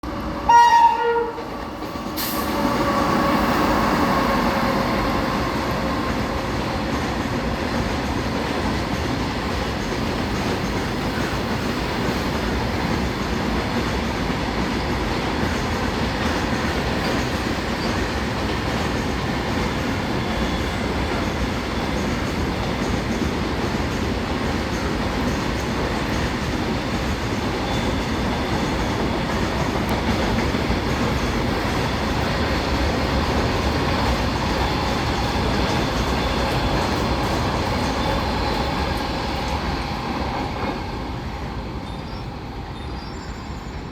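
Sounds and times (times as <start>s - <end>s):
freight train rumbling past: 0.0s - 43.9s
locomotive horn blast: 0.4s - 1.5s.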